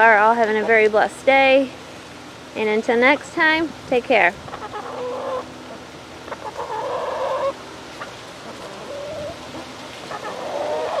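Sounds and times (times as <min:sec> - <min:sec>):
chickens clucking: 0:04.4 - 0:11.0
drawn-out chicken calls: 0:04.4 - 0:11.0.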